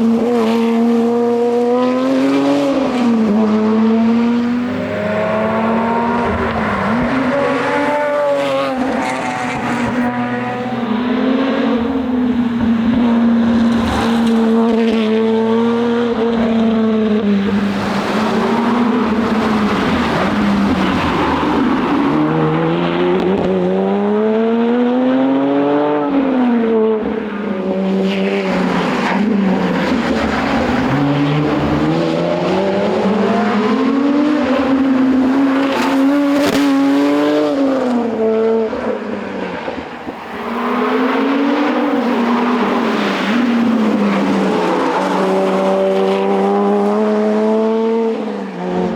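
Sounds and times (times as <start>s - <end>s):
car engine revving hard: 40.1s - 48.9s.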